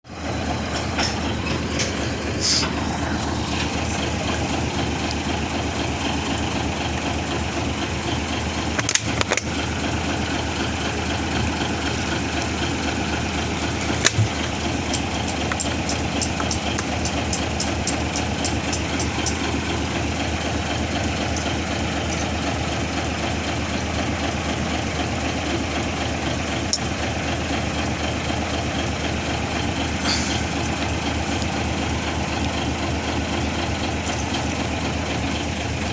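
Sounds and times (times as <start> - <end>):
diesel engine idling: 0.0 - 35.9
rapid high ticks: 14.9 - 19.4.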